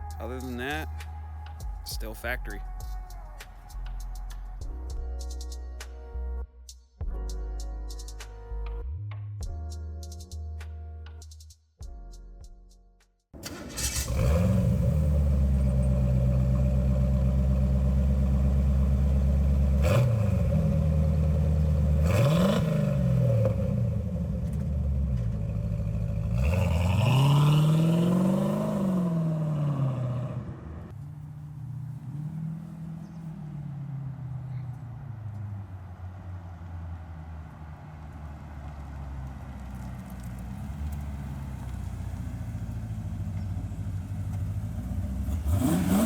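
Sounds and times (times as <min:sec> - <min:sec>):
car engine idling: 0:13.4 - 0:46.0
car engine revving: 0:13.4 - 0:46.0
car engine starting: 0:13.4 - 0:46.0.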